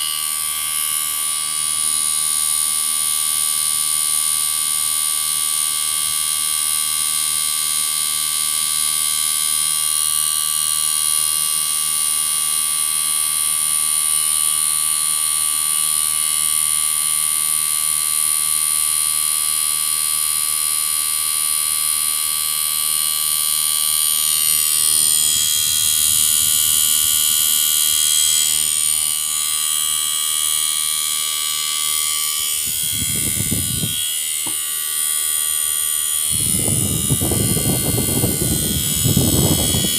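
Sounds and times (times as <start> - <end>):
air conditioner hum and whine: 22.3 - 39.9.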